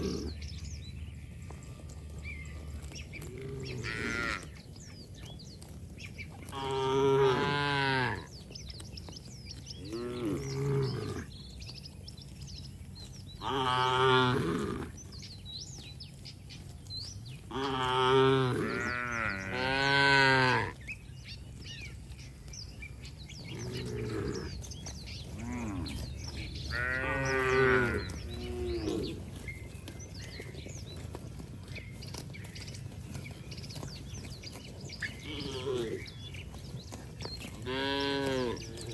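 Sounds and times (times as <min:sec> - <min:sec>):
cattle mooing: 0:00.0 - 0:00.5, 0:02.3 - 0:04.5, 0:06.5 - 0:08.3, 0:09.8 - 0:11.3, 0:13.4 - 0:15.0, 0:17.5 - 0:20.8, 0:23.5 - 0:24.6, 0:25.4 - 0:29.4, 0:35.2 - 0:36.2, 0:37.6 - 0:38.9.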